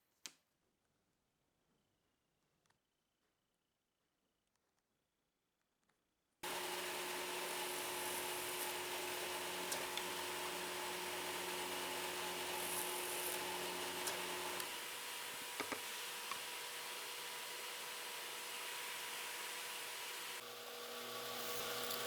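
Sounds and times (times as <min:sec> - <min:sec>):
woodworking power tool running: 0:06.4 - 0:22.0.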